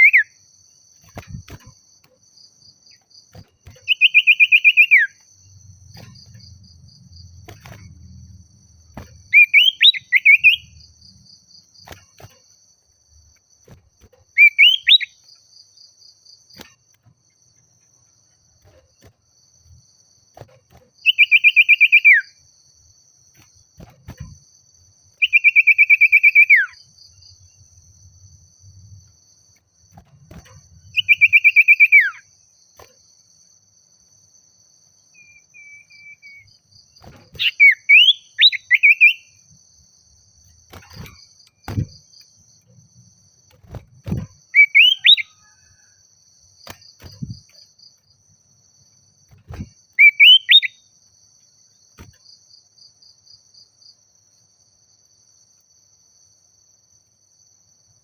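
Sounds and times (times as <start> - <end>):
bird whistling song: 0.0 - 0.4, 3.8 - 5.2, 9.3 - 10.8, 14.4 - 15.2, 21.0 - 22.4, 25.2 - 26.8, 30.9 - 32.2, 35.2 - 36.6, 37.3 - 39.4, 44.5 - 45.6, 49.5 - 50.8.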